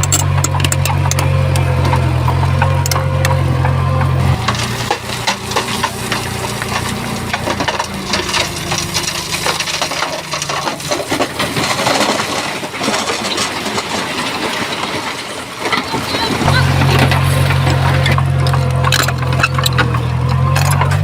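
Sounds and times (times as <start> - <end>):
heavy machine engine: 0.0 - 21.0
rocks and soil tumbling: 0.0 - 21.0.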